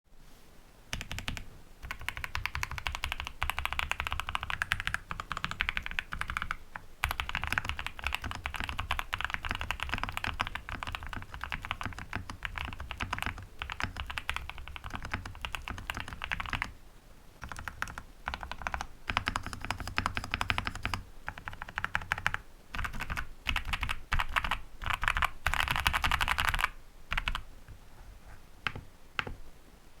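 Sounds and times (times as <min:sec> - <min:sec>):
fast typing on mechanical keyboard: 0:00.9 - 0:16.8, 0:17.4 - 0:27.4.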